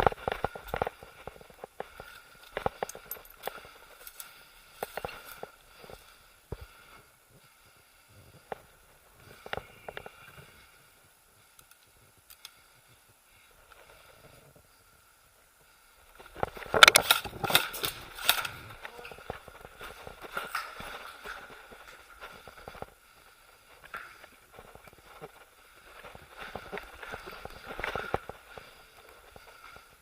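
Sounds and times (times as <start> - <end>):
twigs snapping: 16.5 - 19.4.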